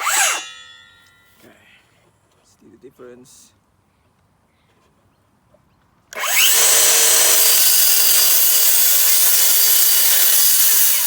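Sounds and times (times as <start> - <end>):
circular saw cutting: 0.0 - 0.6, 6.2 - 11.0.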